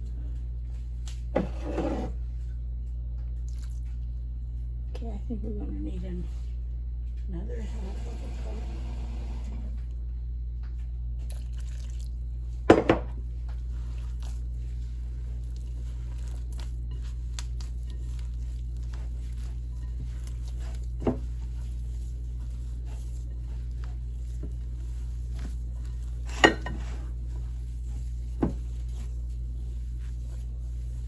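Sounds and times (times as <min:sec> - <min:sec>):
steady low hum: 0:00.0 - 0:31.0
hands kneading wet dough: 0:02.2 - 0:05.1, 0:10.6 - 0:31.0.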